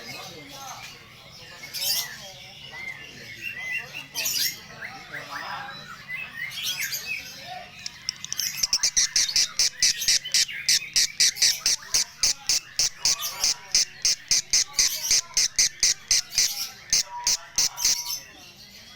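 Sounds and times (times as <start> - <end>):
lovebird chirping: 7.8 - 18.2.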